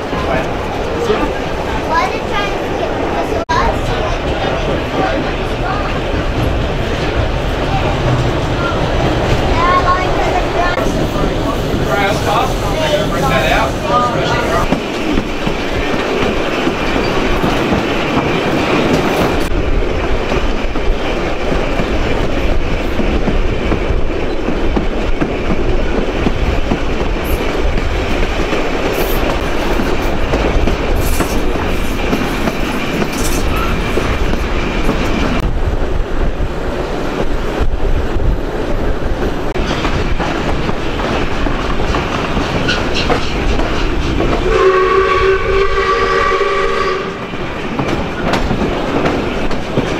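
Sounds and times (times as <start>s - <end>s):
steam train running: 0.0s - 49.9s
wheels clicking over rail joints: 14.2s - 35.4s, 39.2s - 45.0s, 47.4s - 49.9s.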